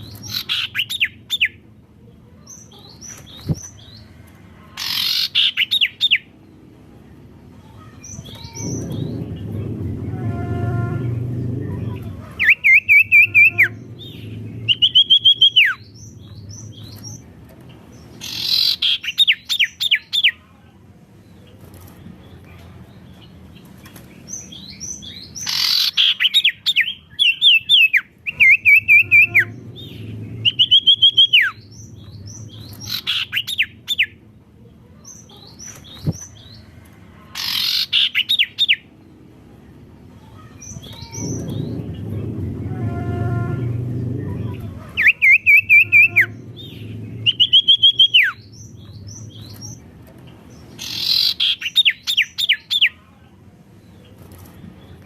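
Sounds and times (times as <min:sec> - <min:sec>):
bird singing loudly: 0:04.8 - 0:06.3, 0:12.4 - 0:15.9, 0:25.1 - 0:34.2, 0:37.4 - 0:38.8, 0:45.0 - 0:49.6, 0:50.8 - 0:53.0.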